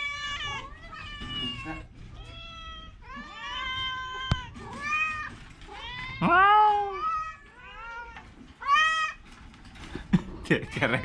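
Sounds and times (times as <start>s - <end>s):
cat meowing: 0.0s - 9.2s.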